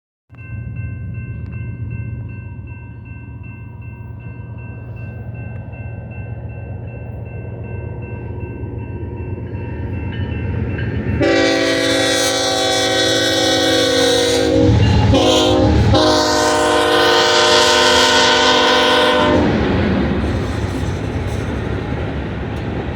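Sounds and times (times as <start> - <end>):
diesel locomotives rumbling: 0.3 - 22.9
locomotive air horn: 11.2 - 19.5.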